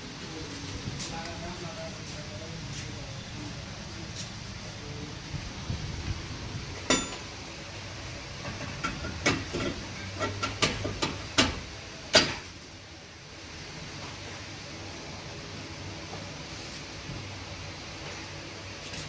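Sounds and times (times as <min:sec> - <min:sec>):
metal tools clanking: 0:06.9 - 0:07.3.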